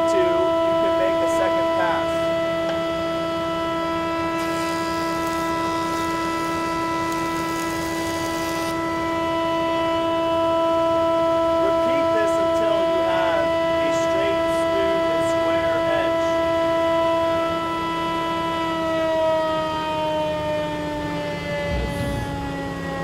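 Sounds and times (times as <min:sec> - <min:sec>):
jointer whining: 0:04.2 - 0:08.8.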